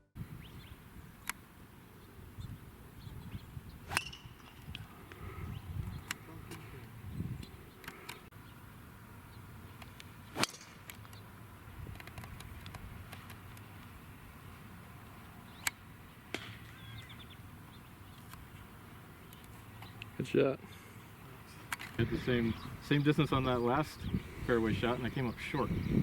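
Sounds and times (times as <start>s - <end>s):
golf club striking ball: 3.9s - 4.6s, 10.4s - 11.1s
faint bird chirps: 16.6s - 18.2s.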